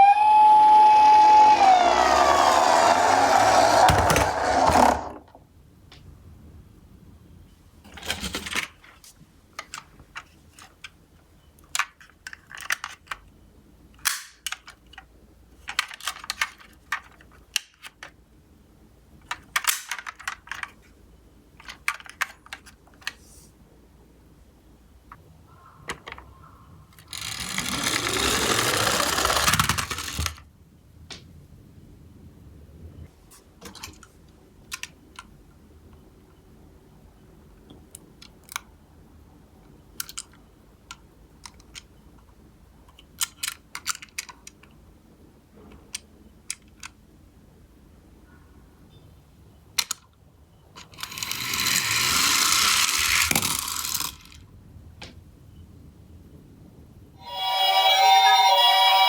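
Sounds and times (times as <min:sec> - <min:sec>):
toy car rolling down slope: 0:00.0 - 0:05.4, 0:27.0 - 0:30.4, 0:50.8 - 0:54.4
toy cars clicking and clattering: 0:00.4 - 0:05.3, 0:11.6 - 0:13.2, 0:14.0 - 0:18.2, 0:19.2 - 0:20.9, 0:21.6 - 0:23.2, 0:26.9 - 0:30.5, 0:40.0 - 0:41.9, 0:42.9 - 0:44.7, 0:50.8 - 0:54.5.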